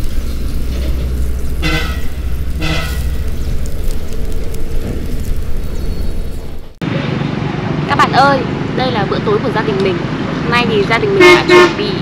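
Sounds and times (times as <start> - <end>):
road traffic rumbling: 0.0 - 12.0
vehicle horn toots: 1.6 - 3.2, 11.2 - 11.9.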